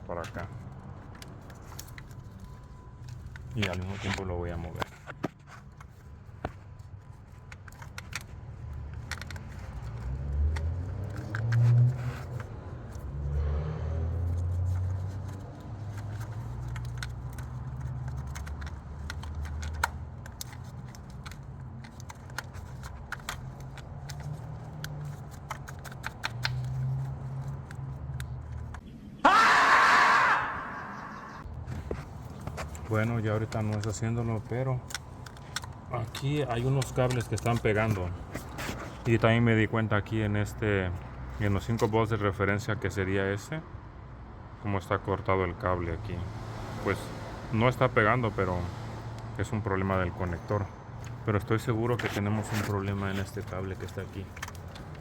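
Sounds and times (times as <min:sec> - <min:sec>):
hands tugging a wire: 0:00.0 - 0:28.8, 0:31.6 - 0:39.5, 0:49.8 - 0:55.0
scraping and rustling: 0:00.1 - 0:28.8, 0:31.6 - 0:39.7, 0:49.8 - 0:55.0.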